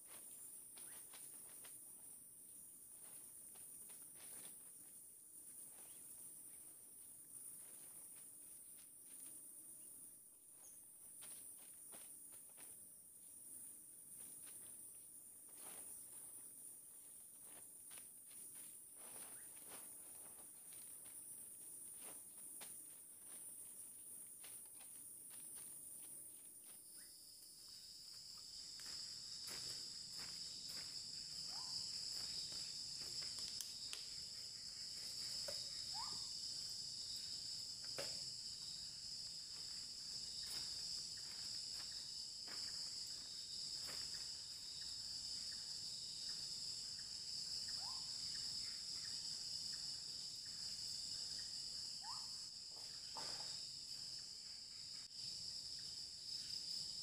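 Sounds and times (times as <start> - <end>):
night insects trilling: 0.0 - 57.0
faint clicks and snaps: 33.2 - 34.1.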